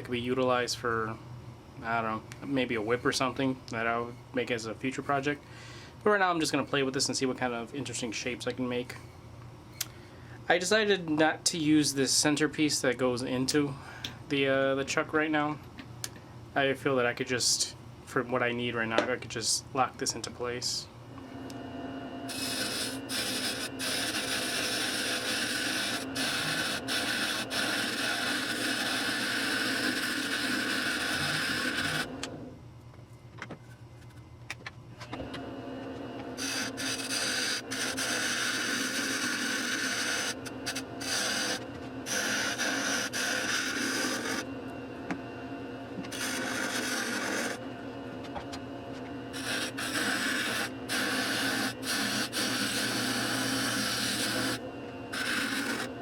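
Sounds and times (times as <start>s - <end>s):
turning tool cutting wood: 22.3s - 32.4s, 35.4s - 44.5s, 46.0s - 47.7s, 49.3s - 56.0s
wood lathe running: 22.3s - 32.4s, 35.3s - 44.5s, 45.9s - 47.9s, 48.9s - 56.0s.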